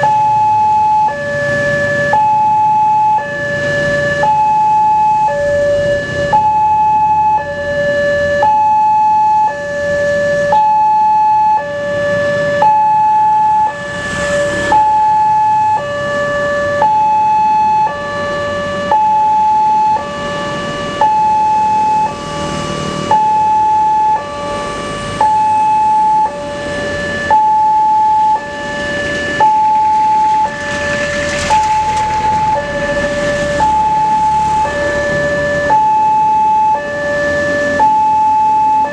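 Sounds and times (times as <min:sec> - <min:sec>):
level crossing two-tone alarm: 0:00.0 - 0:38.9
rushing noise: 0:13.5 - 0:16.4, 0:28.1 - 0:35.7.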